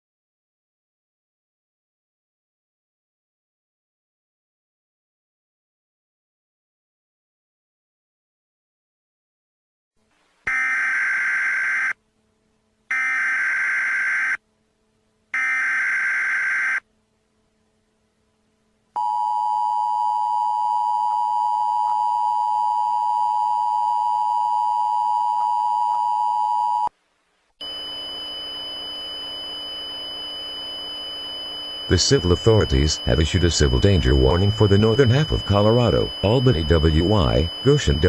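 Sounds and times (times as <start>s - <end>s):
steady buzzing tone: 10.5s - 19.6s, 27.6s - 38.0s
two-tone attention signal: 27.6s - 38.0s
raspy electronic data screech: 27.7s - 38.0s.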